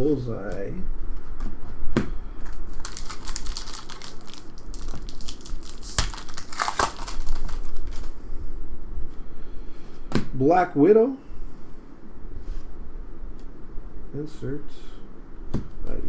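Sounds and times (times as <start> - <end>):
crinkly packaging being handled: 2.4 - 8.2.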